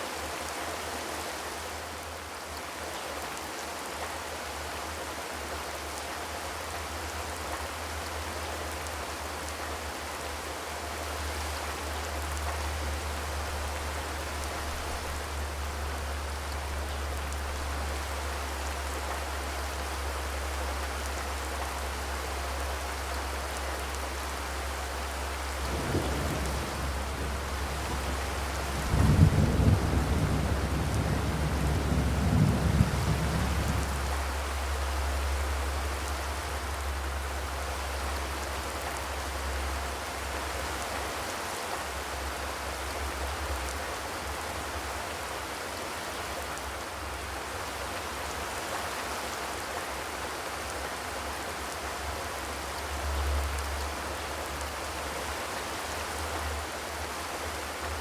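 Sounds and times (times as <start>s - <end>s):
rain on a metal roof: 0.0s - 58.0s
low rumble: 25.6s - 34.2s.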